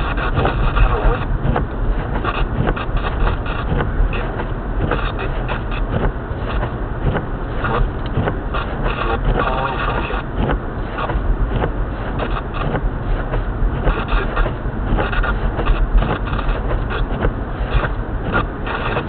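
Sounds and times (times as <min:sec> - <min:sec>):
vehicle engine and road rumble: 0:00.0 - 0:19.0.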